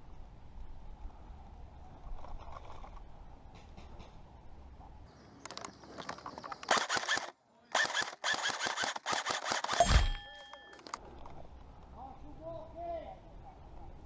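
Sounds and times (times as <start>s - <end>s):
airsoft gun automatic bursts: 6.6s - 11.0s.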